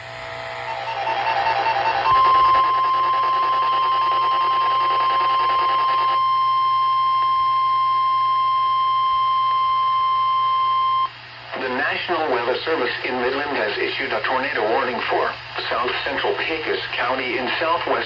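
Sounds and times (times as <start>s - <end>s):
loud steady alarm beep: 0.7s - 11.1s.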